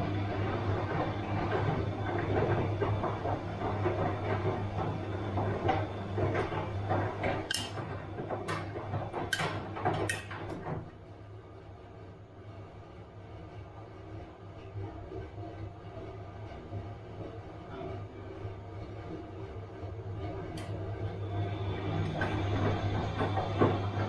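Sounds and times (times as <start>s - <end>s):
washing machine hum: 0.0s - 24.0s
washing machine drum tumbling: 20.6s - 24.0s.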